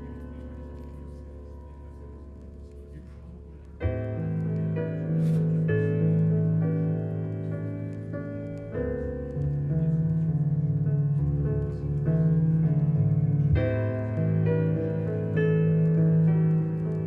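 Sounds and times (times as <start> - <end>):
piano music through loudspeakers: 0.0 - 17.0.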